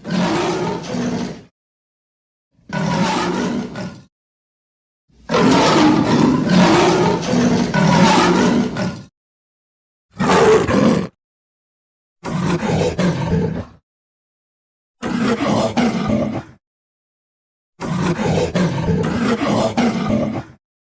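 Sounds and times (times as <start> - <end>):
cartoon lion roar: 0.0 - 1.5, 2.6 - 4.1, 5.2 - 9.1, 10.1 - 11.2, 12.2 - 13.8, 15.0 - 16.6, 17.8 - 20.6.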